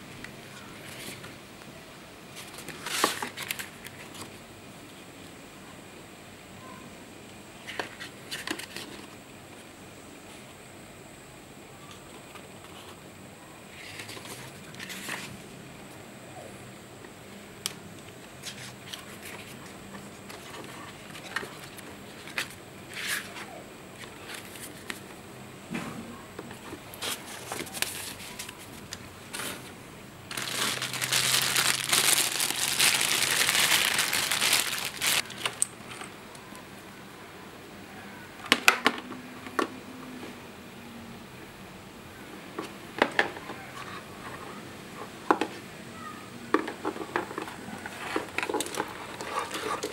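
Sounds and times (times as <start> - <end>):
plastic packaging crinkling: 30.3 - 35.7, 47.9 - 49.9.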